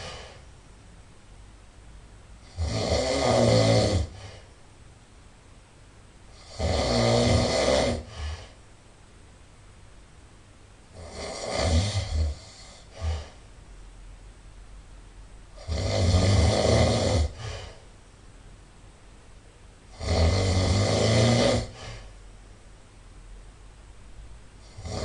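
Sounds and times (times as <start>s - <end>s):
person snoring: 0.0s - 0.4s, 2.4s - 4.5s, 6.3s - 8.6s, 11.0s - 13.4s, 15.6s - 17.8s, 19.9s - 22.2s, 24.6s - 25.0s.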